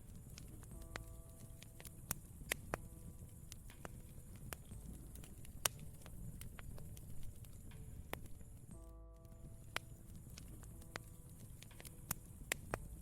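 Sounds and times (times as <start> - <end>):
campfire crackling and popping: 0.0 - 13.0
steady low rumble: 0.0 - 13.0.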